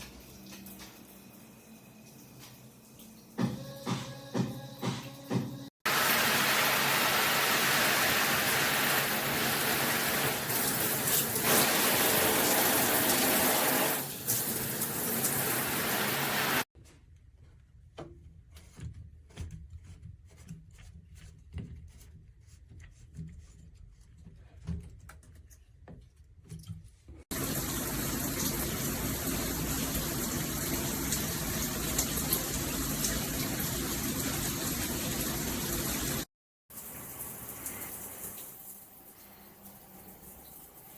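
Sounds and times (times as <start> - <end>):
water dripping and splashing: 0.0 - 3.6, 5.9 - 16.7, 27.3 - 40.9
shower spray hissing: 5.9 - 16.7, 27.3 - 40.9.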